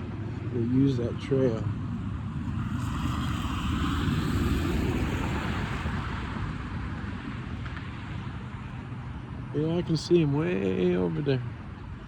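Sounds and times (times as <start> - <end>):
vehicle passing: 2.3 - 6.6.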